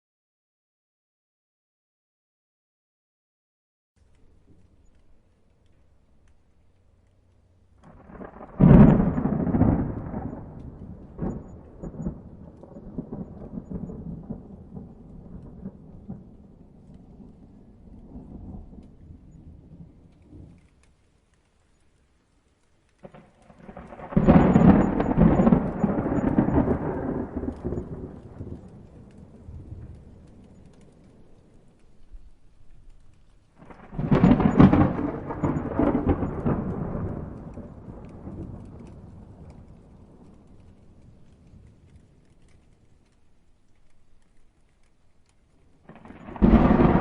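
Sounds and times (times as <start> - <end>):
thunder rumbling: 4.0 - 20.9, 23.0 - 47.0
sharp thunder crack: 7.9 - 20.5, 23.0 - 30.2, 33.6 - 40.5, 45.9 - 47.0.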